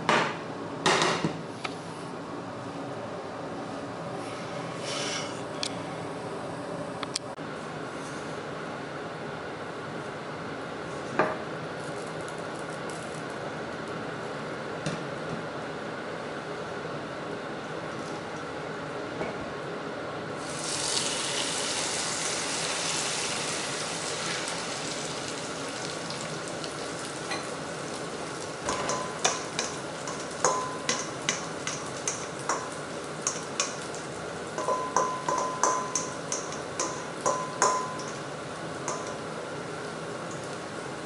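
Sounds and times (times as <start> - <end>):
oil sizzling in a frying pan: 20.4 - 38.1.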